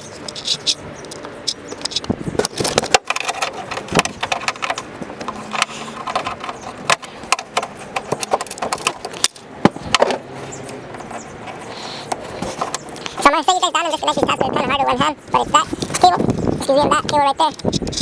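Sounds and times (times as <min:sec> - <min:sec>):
plastic clicks taps and scrapes: 0:15.8 - 0:18.0.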